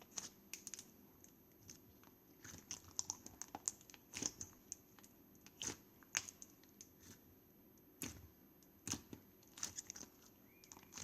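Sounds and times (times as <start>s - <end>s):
slime crust crunching: 2.4s - 4.8s.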